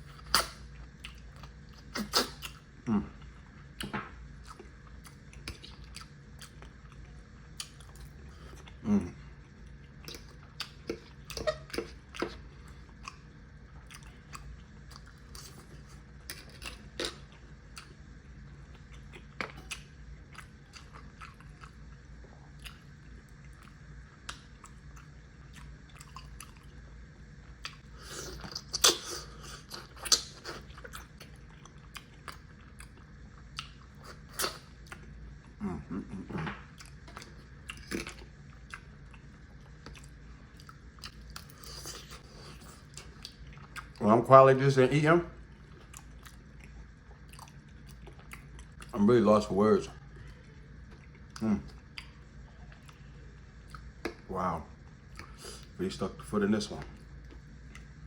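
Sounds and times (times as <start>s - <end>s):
person chewing and biting: 0.1s - 2.6s, 27.6s - 35.6s, 36.2s - 44.0s.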